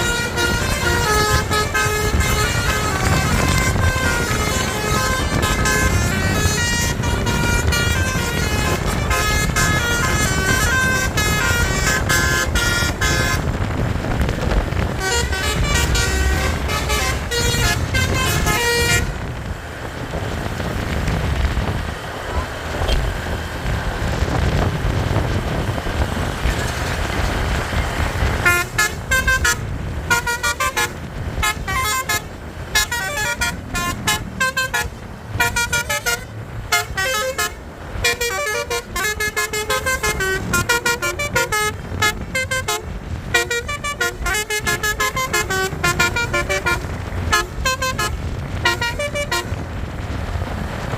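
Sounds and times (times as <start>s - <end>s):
multi-trumpet air horn melody: 0.0s - 13.6s, 14.9s - 19.3s, 28.4s - 49.6s
bus engine rumble: 0.0s - 50.9s.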